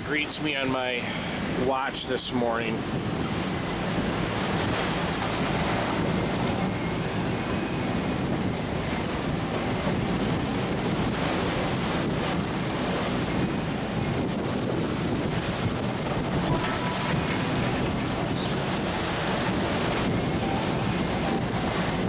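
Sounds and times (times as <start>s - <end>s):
big waves breaking: 0.0s - 22.0s
gale wind buffeting microphone: 0.0s - 22.0s.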